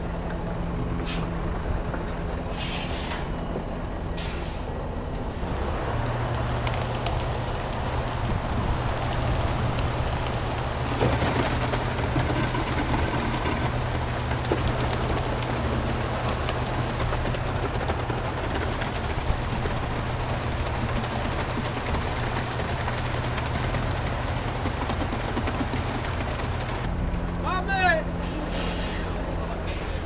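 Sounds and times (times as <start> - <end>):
engine hum: 0.0 - 30.0.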